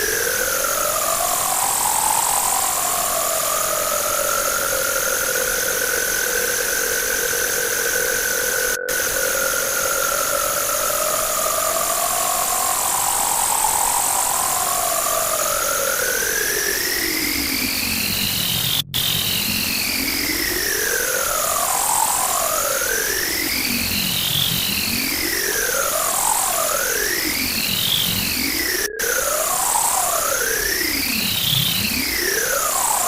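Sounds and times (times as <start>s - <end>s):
loud electronic static: 18.0s - 19.9s, 26.6s - 29.3s.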